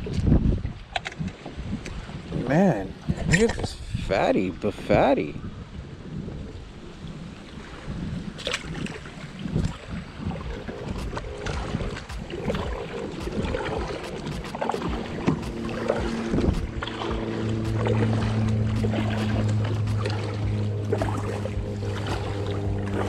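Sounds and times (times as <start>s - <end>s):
water around a kayak: 0.0s - 23.0s
wind: 0.0s - 23.0s
knocks and clicks: 10.5s - 23.0s
low hum of held tones: 10.5s - 23.0s.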